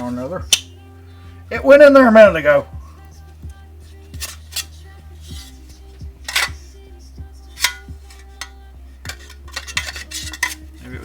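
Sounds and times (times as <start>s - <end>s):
background music with a beat: 0.0s - 11.0s
clicks of small parts handled: 6.2s - 6.6s.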